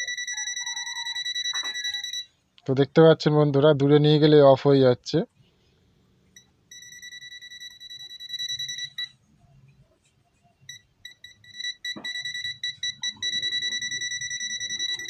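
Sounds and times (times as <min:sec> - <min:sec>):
high-pitched rapid beeping: 0:00.0 - 0:02.3, 0:10.7 - 0:15.0.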